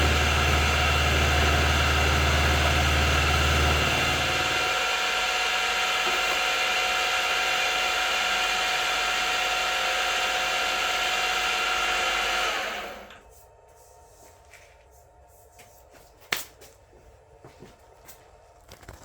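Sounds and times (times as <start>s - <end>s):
milling machine whining: 0.0s - 13.2s.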